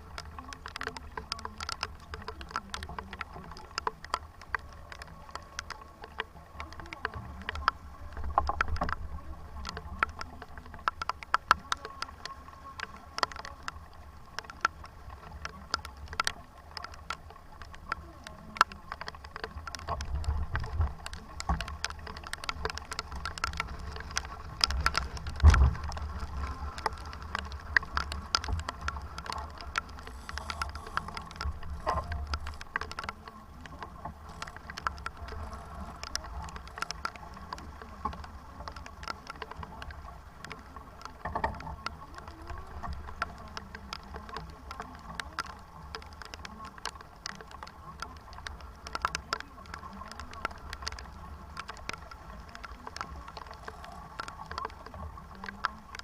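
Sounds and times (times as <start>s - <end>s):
sharp clicks and taps: 0.0s - 56.0s
wind rumbling on microphone: 0.0s - 56.0s.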